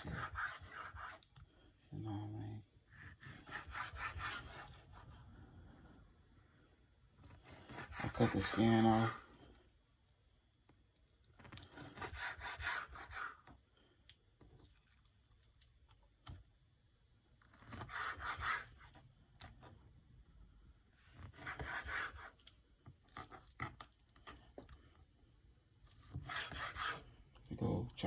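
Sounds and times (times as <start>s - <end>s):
knife sawing through fish: 7.4s - 9.2s.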